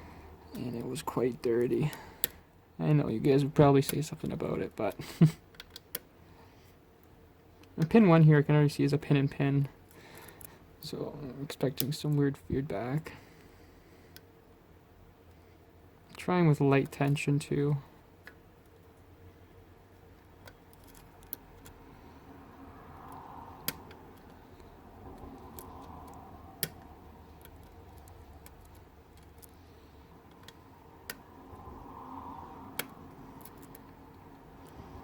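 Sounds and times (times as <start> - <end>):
lock pick scraping: 20.4 - 21.8.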